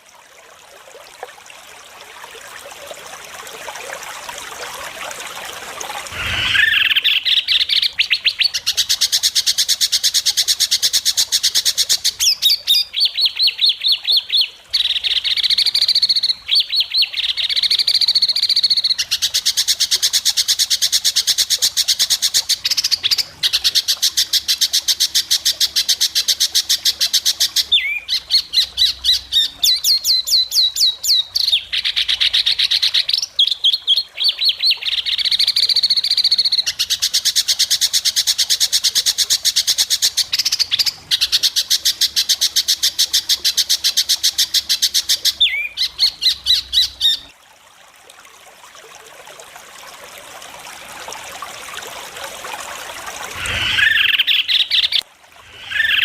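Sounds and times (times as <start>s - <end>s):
bird whistled phrases: 6.2s - 8.2s.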